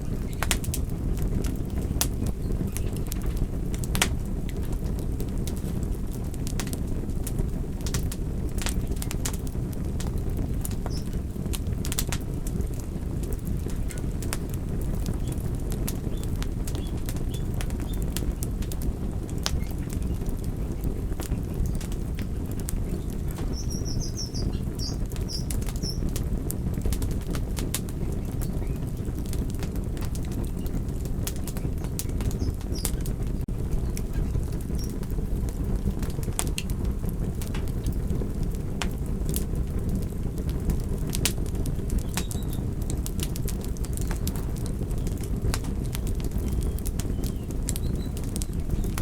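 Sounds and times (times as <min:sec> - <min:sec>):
low fire rumble: 0:00.0 - 0:49.0
wood fire crackling: 0:00.0 - 0:49.0
small bird chirping: 0:10.9 - 0:11.1, 0:23.0 - 0:26.1, 0:31.5 - 0:33.1, 0:46.4 - 0:49.0.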